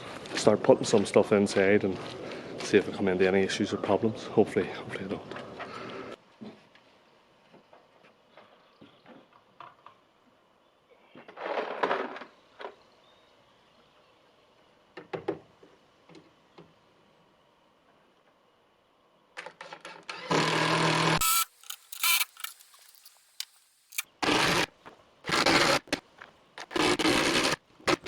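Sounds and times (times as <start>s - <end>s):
rustling scrape: 25.3s - 28.0s.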